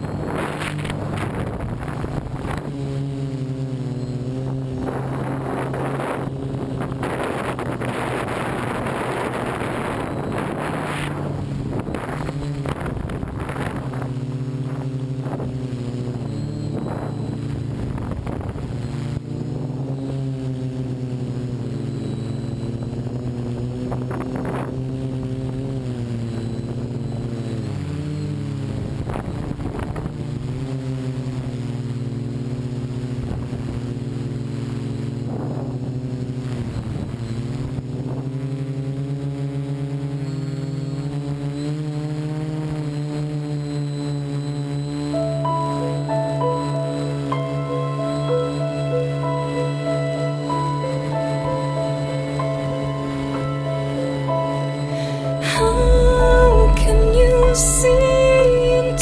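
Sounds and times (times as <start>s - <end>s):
drone motors buzzing: 0.0s - 31.2s.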